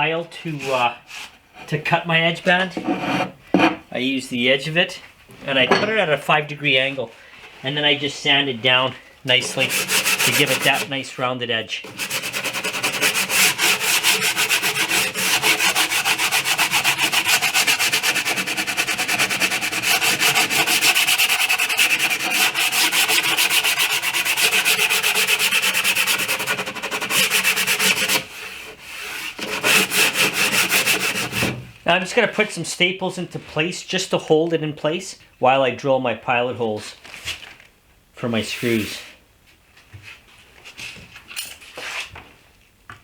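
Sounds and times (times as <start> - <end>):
hand sanding strokes: 9.3 - 11.0, 11.9 - 31.5, 38.4 - 39.1.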